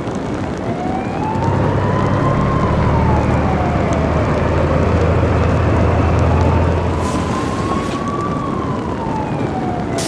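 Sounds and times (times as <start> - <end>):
emergency siren wailing: 0.0 - 10.0
steady rushing noise: 0.0 - 10.0
low engine rumble: 0.2 - 10.0.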